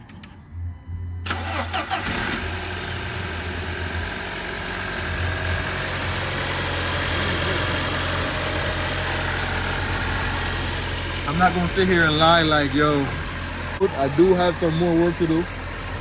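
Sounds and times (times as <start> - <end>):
car engine starting and idling: 1.2 - 16.0.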